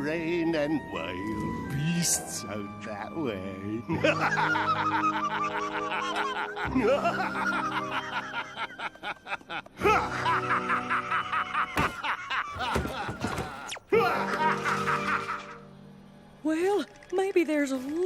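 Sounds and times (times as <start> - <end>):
background music: 0.0 - 18.0
cartoon voices laughing: 4.0 - 15.6.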